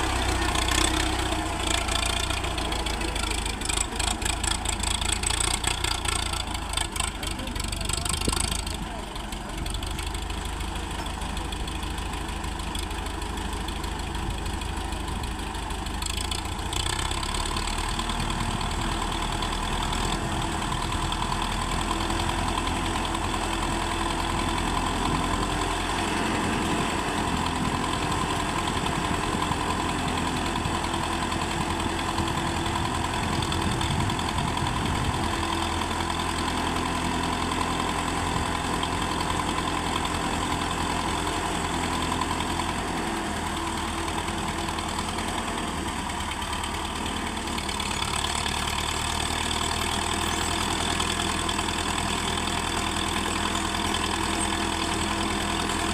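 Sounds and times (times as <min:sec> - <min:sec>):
tractor diesel engine running: 0:00.0 - 0:55.9.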